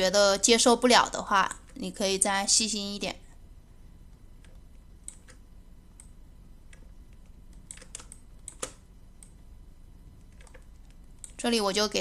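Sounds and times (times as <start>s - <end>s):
faint low hum: 0.0s - 12.0s
mouse and keyboard clicks: 4.4s - 5.4s, 6.0s - 9.4s.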